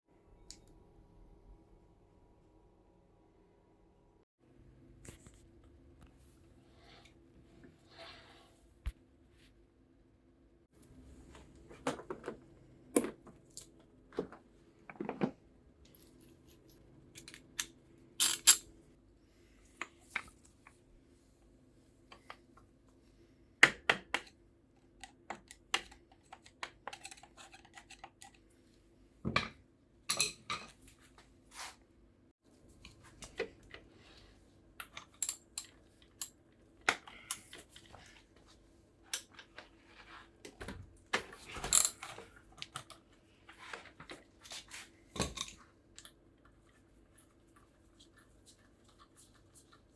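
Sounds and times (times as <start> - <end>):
metal tools clicking and clinking: 15.9 - 18.7.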